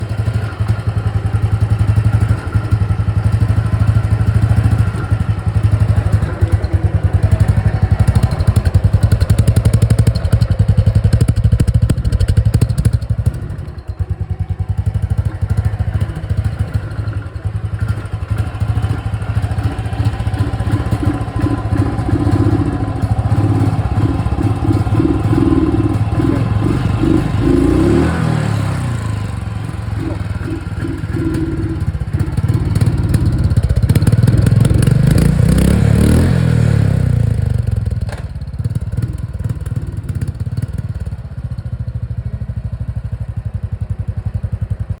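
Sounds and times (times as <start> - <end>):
motorcycle engine thumping: 0.0 - 36.2, 37.8 - 42.2.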